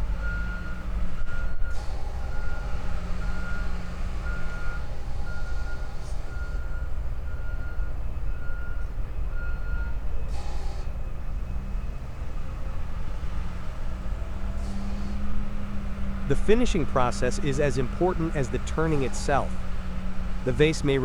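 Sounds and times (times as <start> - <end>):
engine rumbling: 0.0 - 21.0
reversing alarm beeping: 0.2 - 10.9, 16.3 - 21.0.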